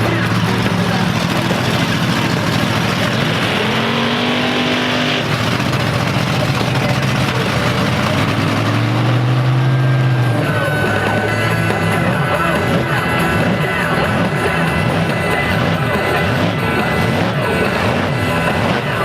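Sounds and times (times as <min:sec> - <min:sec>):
music over loudspeakers: 0:00.0 - 0:02.0, 0:09.6 - 0:19.0
big engine revving: 0:00.0 - 0:19.0
crowd and arena noise: 0:00.0 - 0:19.0.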